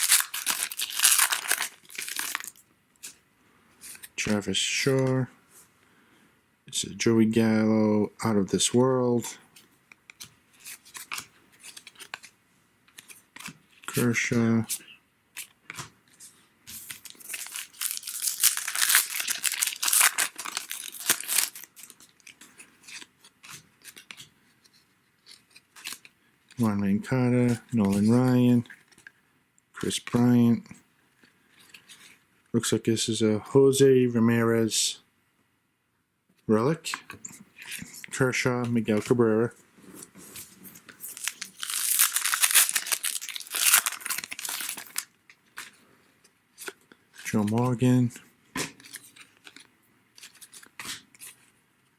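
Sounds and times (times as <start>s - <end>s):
cards being handled: 0.0s - 3.2s, 15.4s - 26.6s, 39.9s - 45.8s, 46.6s - 51.5s
wrapper tearing and crinkling: 0.0s - 3.2s, 16.8s - 24.2s, 40.9s - 45.7s.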